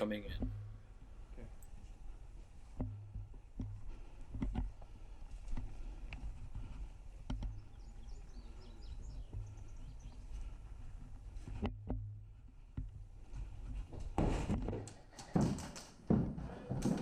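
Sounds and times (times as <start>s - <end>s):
sharp knocks and clicks: 2.7s - 4.7s, 7.2s - 7.7s, 11.5s - 13.0s, 14.0s - 17.0s
birds chirping: 5.6s - 11.2s.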